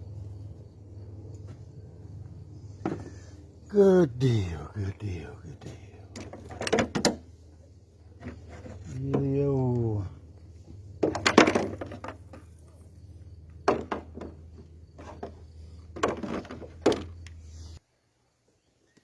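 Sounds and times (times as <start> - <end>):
steady low hum: 0.0 - 16.0
wooden knocks and clatter: 11.0 - 12.5, 13.6 - 17.2.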